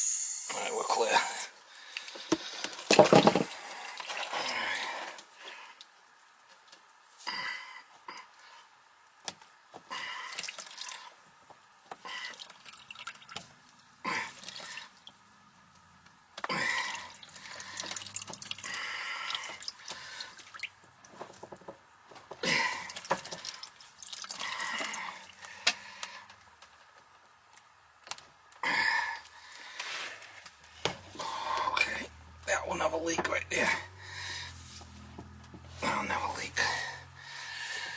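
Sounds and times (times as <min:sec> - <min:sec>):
water splashing and dripping: 0:01.9 - 0:07.1, 0:09.3 - 0:21.5, 0:22.5 - 0:26.2.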